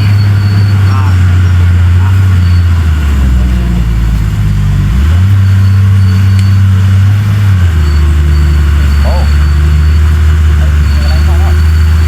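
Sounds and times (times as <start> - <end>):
bulldozer diesel engine running: 0.0 - 12.0.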